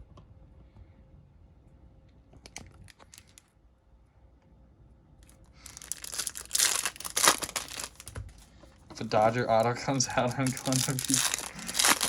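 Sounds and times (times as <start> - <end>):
foil pack crinkling as torn open: 5.6 - 8.2, 9.1 - 12.0.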